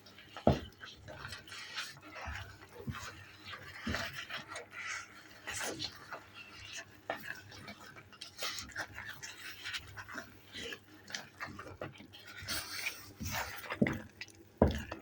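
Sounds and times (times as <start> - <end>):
food squelching: 0.0 - 15.0.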